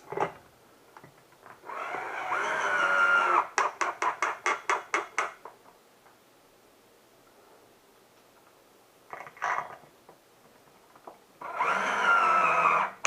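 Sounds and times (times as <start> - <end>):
power drill whirring: 1.6 - 3.6, 11.4 - 13.0.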